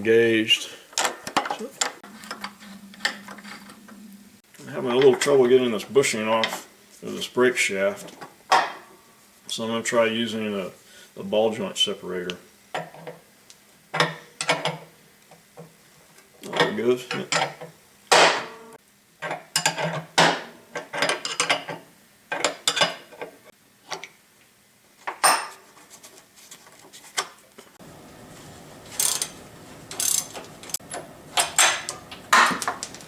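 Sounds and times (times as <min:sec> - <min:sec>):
faint steady hum: 0:27.8 - 0:33.0
metal tools clanking: 0:28.0 - 0:33.0.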